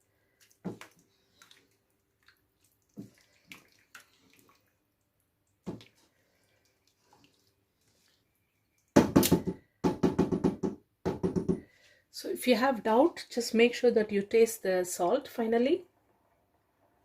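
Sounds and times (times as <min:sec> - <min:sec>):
faint water sounds: 0:00.0 - 0:09.0.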